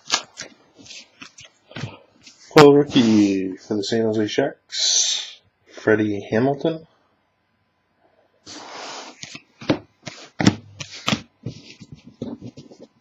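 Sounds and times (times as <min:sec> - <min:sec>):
cards clicking and slapping: 0:00.0 - 0:01.4.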